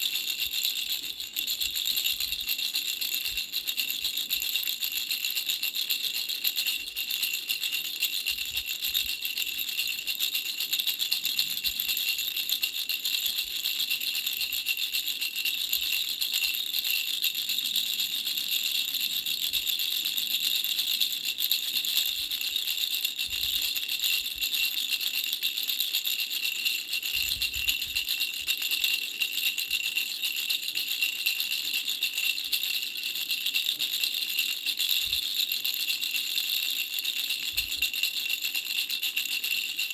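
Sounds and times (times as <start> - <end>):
baby rattle bells jingling: 0.0 - 39.9.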